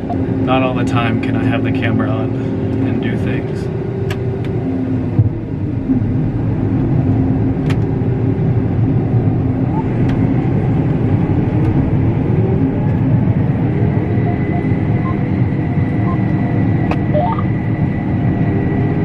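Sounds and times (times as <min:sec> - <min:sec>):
combine harvester engine drone: 0:00.0 - 0:19.0
high whine: 0:04.5 - 0:19.0.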